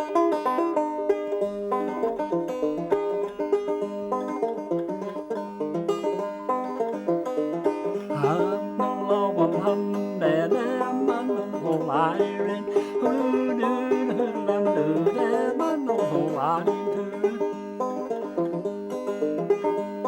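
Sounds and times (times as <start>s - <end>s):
banjo picking: 0.0s - 20.0s.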